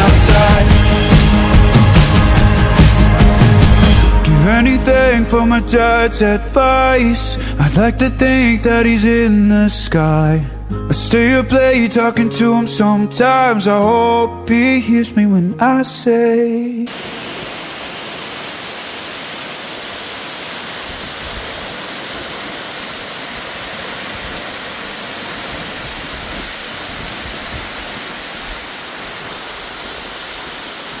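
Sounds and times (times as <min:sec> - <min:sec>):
waterfall roaring: 0:16.9 - 0:31.0
wind thumps on microphone: 0:25.3 - 0:28.7.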